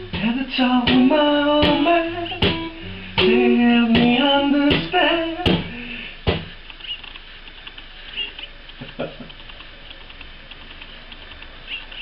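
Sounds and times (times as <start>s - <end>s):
acoustic guitar strumming: 0.0s - 6.0s.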